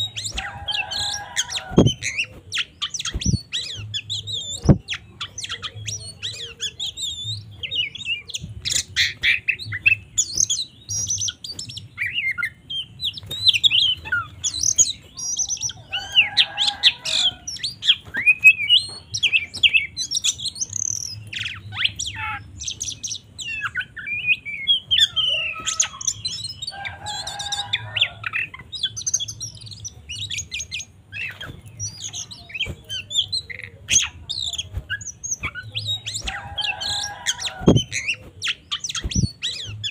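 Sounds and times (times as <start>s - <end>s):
bird singing whistles and chirps: 0.0s - 39.9s.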